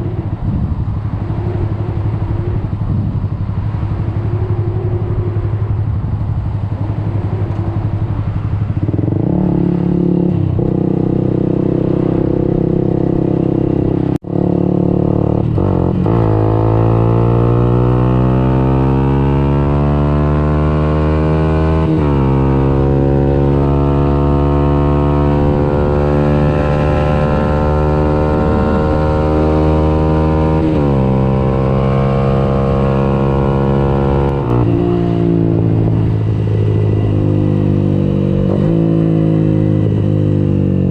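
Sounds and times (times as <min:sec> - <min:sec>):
motorcycle engine accelerating: 0:00.0 - 0:40.9.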